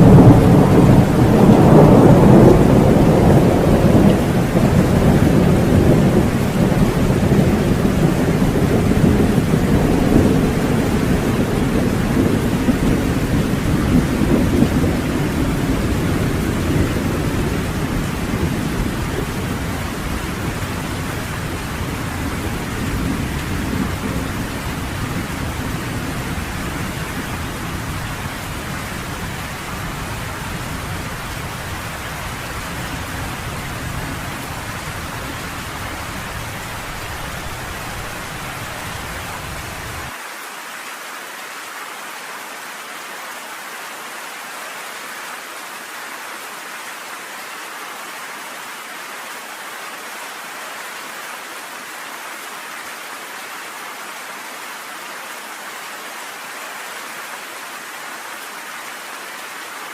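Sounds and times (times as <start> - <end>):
thunder rumbling: 0.0 - 40.1
heavy rain: 0.0 - 59.9.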